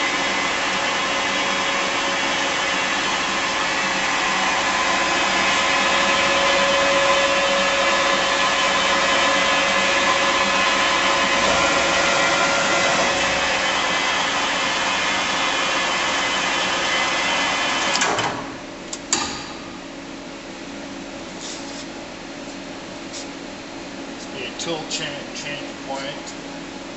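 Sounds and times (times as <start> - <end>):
lathe spindle running: 0.0 - 18.1.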